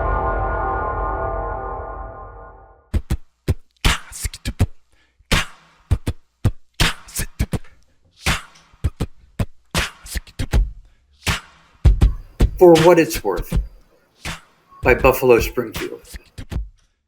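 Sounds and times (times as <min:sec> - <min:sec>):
sparse percussive beat: 0:11.3 - 0:13.8.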